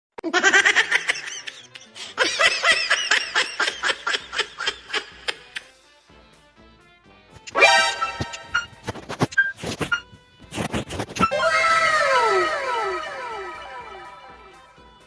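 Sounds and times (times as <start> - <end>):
high-pitched cartoon giggling: 0.2 - 5.6.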